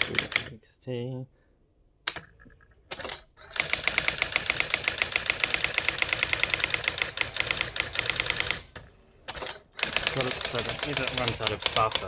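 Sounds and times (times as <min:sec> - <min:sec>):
electronic typewriter striking characters: 0:00.0 - 0:00.5, 0:09.3 - 0:12.0.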